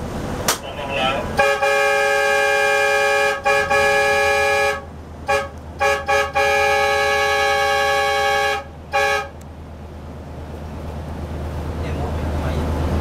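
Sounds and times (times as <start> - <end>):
train horn blasts: 1.4 - 9.4.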